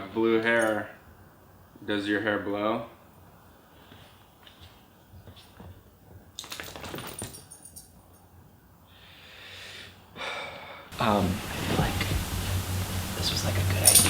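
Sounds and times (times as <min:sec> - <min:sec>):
metallic jingling and clinking: 0:00.5 - 0:00.9, 0:06.4 - 0:08.4, 0:13.6 - 0:14.0
soft hiss: 0:10.8 - 0:14.0.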